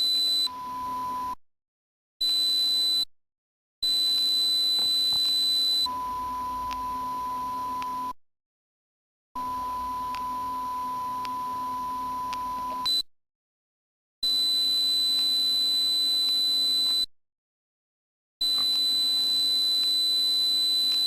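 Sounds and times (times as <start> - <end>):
high sine tone: 0.0 - 1.4, 3.8 - 8.2, 9.4 - 13.1, 14.2 - 17.1, 18.4 - 21.0
low sine tone: 0.0 - 1.4, 4.0 - 8.2, 9.4 - 13.0.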